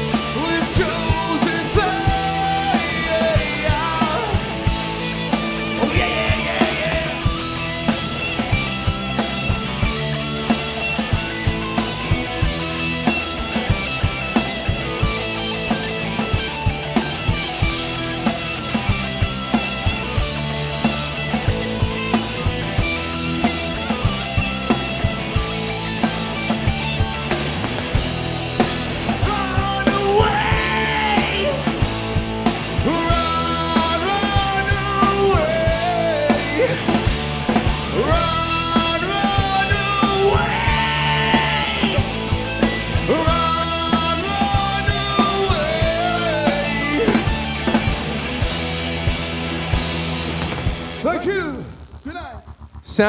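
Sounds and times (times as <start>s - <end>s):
bending lead guitar melody: 0.0s - 53.0s
rock band playing: 0.0s - 53.0s
drum beat: 0.4s - 10.2s.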